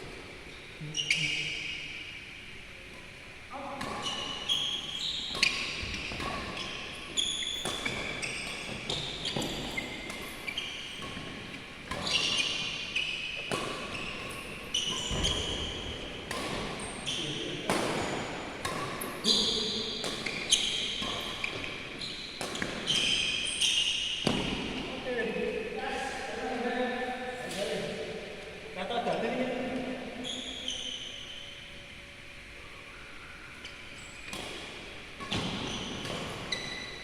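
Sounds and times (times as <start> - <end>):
shoes squeaking on court floor: 0.4 - 2.1, 3.8 - 26.1, 30.2 - 32.0, 33.5 - 37.0
racket hitting shuttlecock: 5.3 - 24.9, 34.3 - 37.0.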